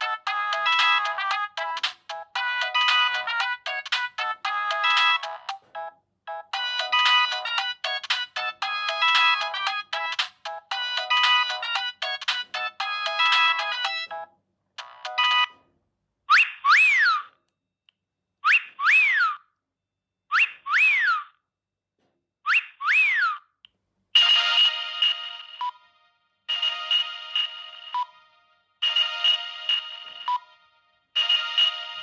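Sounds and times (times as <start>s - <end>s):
phone ringtone melody: 0.0s - 15.6s, 24.2s - 32.0s.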